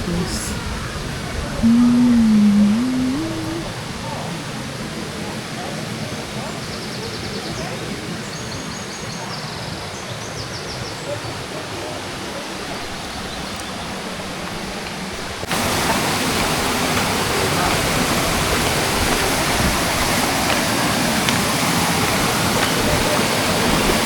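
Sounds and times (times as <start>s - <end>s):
waterfall rushing: 0.0s - 6.1s, 11.0s - 24.0s.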